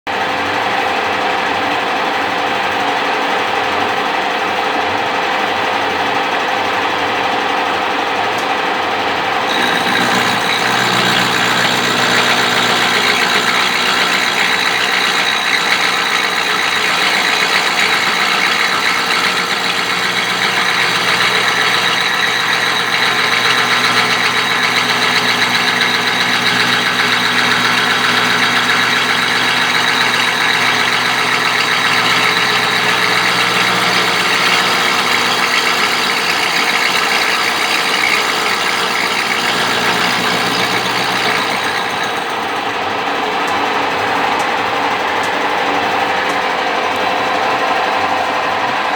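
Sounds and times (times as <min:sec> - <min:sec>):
milling machine whining drone: 0:09.5 - 0:43.6.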